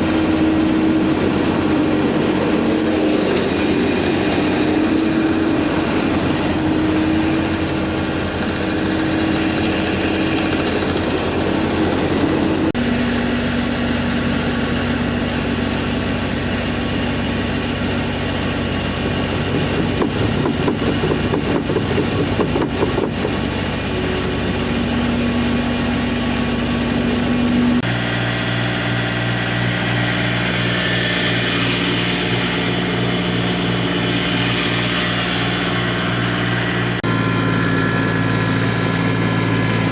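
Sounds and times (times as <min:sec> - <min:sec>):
tractor engine running: 0:00.0 - 0:39.9.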